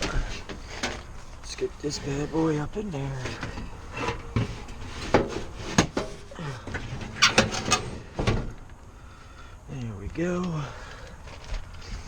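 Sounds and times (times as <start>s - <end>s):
metal knocks and clanks: 3.1s - 8.8s.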